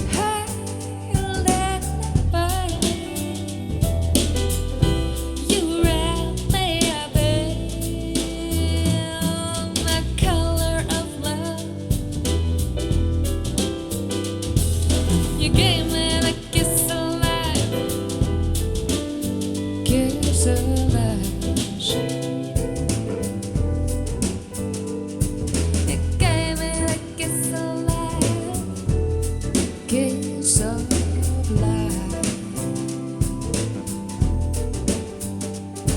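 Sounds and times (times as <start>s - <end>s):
bass: 0.0s - 35.9s
drum kit: 0.0s - 35.9s
person singing: 5.3s - 11.8s, 15.3s - 18.0s, 25.9s - 28.7s, 29.8s - 32.9s.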